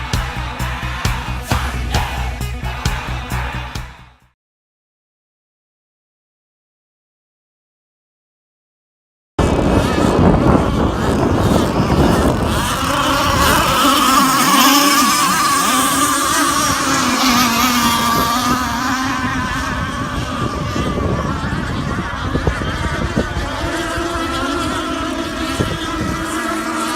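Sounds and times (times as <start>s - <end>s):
high-pitched boat engine whine: 0.0s - 3.7s, 9.4s - 26.9s
wind rumble on microphone: 9.4s - 26.9s.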